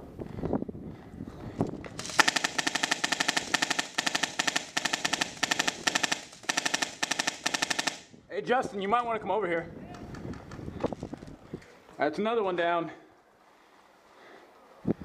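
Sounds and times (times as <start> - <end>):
airsoft gun firing full auto: 2.0 - 8.1.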